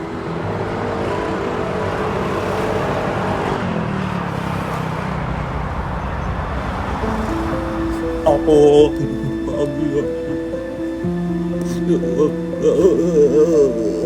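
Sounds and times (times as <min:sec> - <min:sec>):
steady rushing noise: 0:00.0 - 0:14.0
held musical notes: 0:06.2 - 0:14.0.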